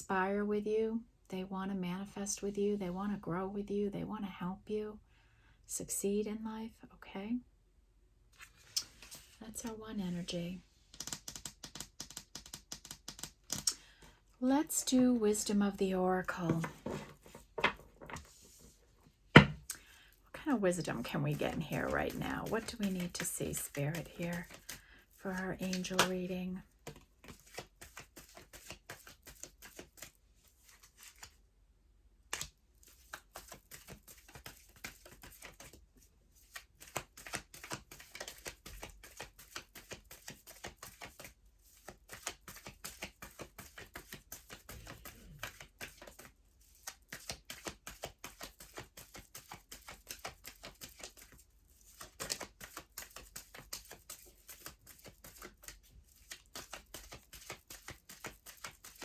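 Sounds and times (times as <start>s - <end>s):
cards being shuffled: 8.4s - 9.4s, 10.9s - 14.0s, 16.5s - 18.8s, 21.5s - 31.4s, 32.3s - 35.8s, 36.4s - 59.0s.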